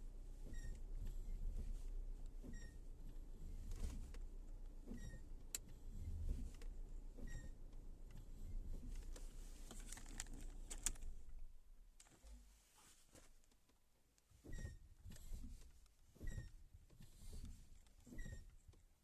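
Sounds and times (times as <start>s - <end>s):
car brakes squeaking: 0.4s - 0.8s, 2.4s - 2.9s, 4.9s - 5.3s, 7.2s - 7.6s, 14.4s - 15.5s, 16.2s - 18.6s.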